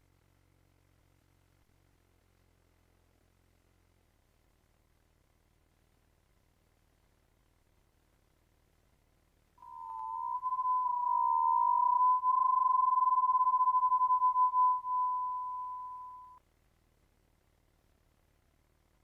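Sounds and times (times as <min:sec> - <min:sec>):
pure beep tone: 0:09.6 - 0:16.4.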